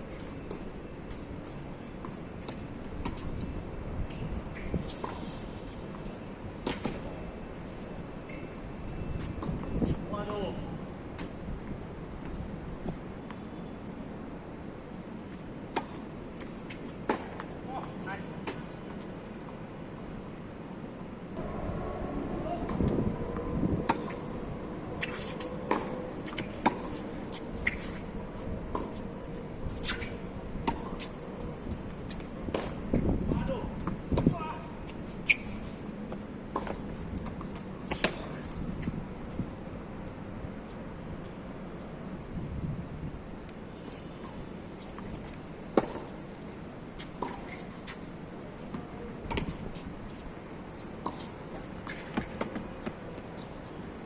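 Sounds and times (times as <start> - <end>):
wind rumbling on microphone: 8.7 - 11.8, 21.4 - 34.9, 42.1 - 43.4
tennis ball hitting rackets: 25.0 - 28.0.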